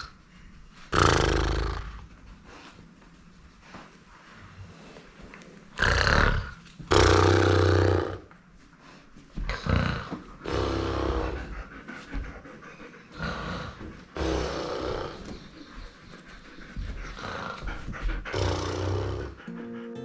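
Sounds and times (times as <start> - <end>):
loud snoring: 0.9 - 2.0, 5.8 - 8.2, 9.5 - 11.4, 13.2 - 15.2.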